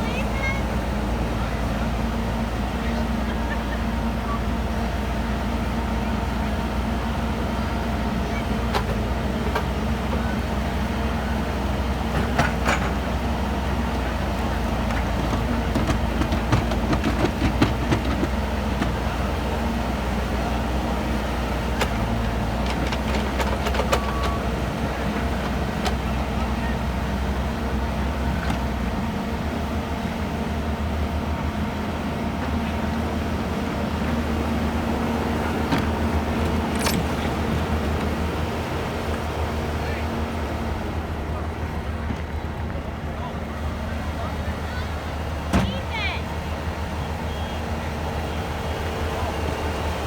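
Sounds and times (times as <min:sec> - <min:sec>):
loader engine running: 0:00.0 - 0:50.0
machine clanks and knocks: 0:12.1 - 0:13.2, 0:14.8 - 0:19.0, 0:21.8 - 0:26.1, 0:35.4 - 0:39.3.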